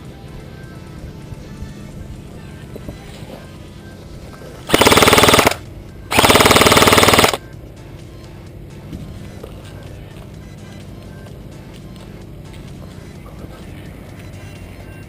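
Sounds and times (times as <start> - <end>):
airsoft gun full-auto bursts: 4.7 - 7.4.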